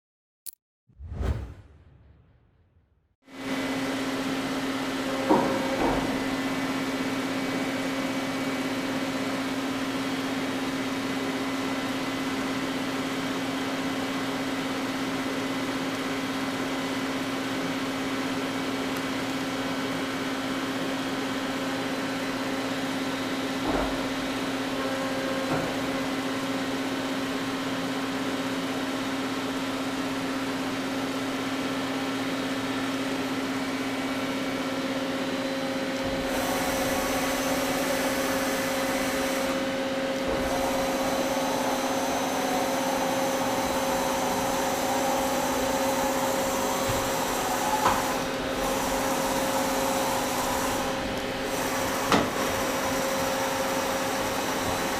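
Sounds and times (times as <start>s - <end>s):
lathe machine hum: 35.0s - 54.9s.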